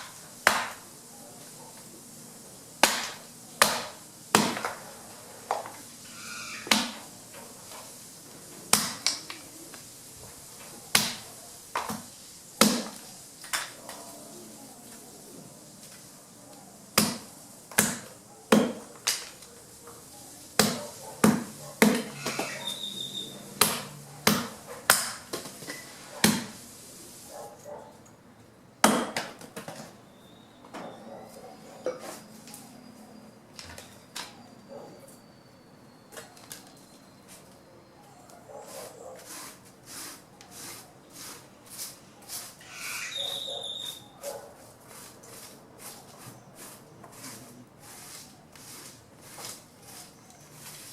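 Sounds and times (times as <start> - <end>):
chopping branches by hand: 0.0 - 0.9, 2.8 - 4.8, 6.6 - 7.9, 8.6 - 9.9, 10.9 - 14.0, 16.9 - 19.5, 20.5 - 22.8, 23.5 - 26.6, 28.8 - 29.9.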